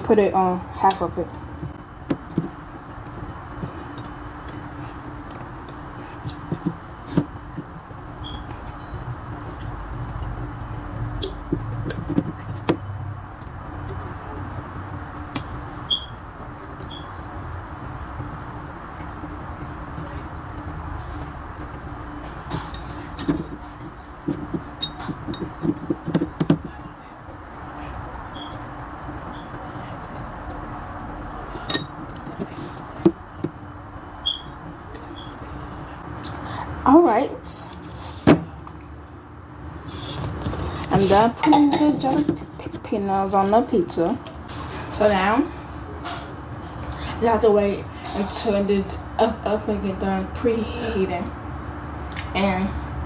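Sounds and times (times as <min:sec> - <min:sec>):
steady low hum: 0:00.0 - 0:53.0
chopsticks clicking and tapping: 0:11.0 - 0:15.6.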